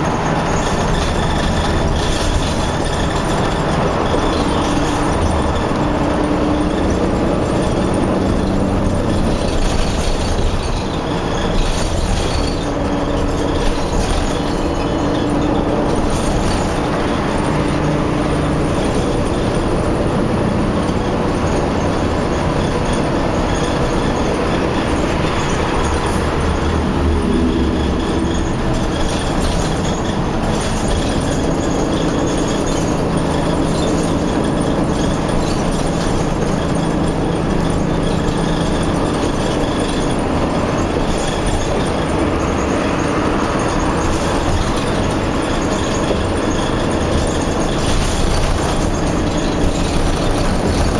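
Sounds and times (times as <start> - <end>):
heavy machinery engines rumbling: 0.0 - 50.9.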